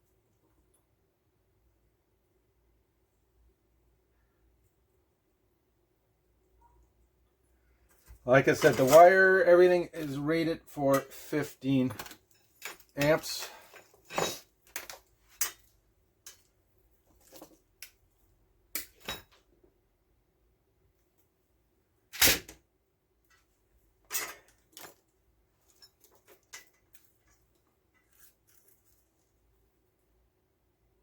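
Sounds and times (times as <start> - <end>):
small tools clicking and knocking: 11.8 - 18.1, 23.3 - 28.8.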